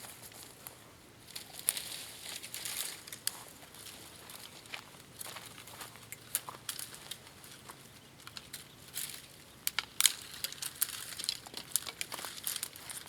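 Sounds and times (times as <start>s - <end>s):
twigs crackling and snapping: 1.3s - 13.0s.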